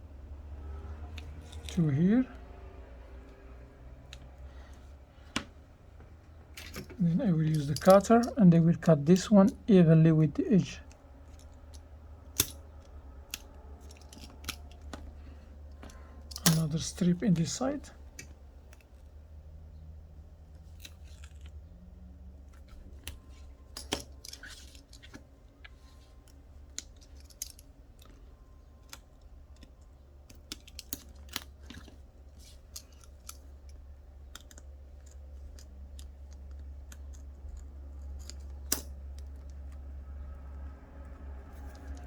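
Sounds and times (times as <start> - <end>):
steady low hum: 0.0 - 42.0
small clicks and taps: 28.8 - 39.9.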